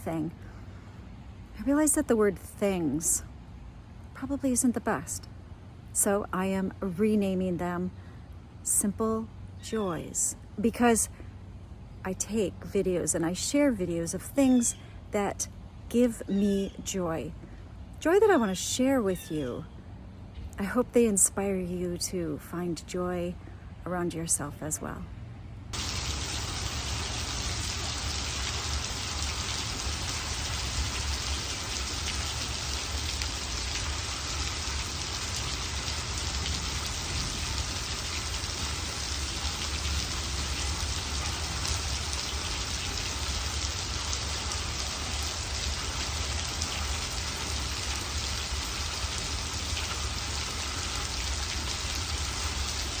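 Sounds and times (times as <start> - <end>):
steady rain falling: 25.8 - 53.0.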